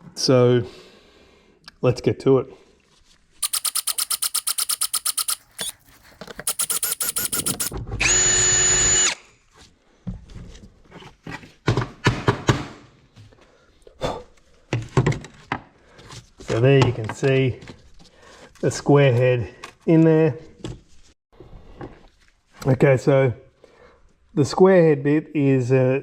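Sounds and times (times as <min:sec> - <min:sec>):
power drill running: 0:03.4 - 0:05.8, 0:06.5 - 0:09.2.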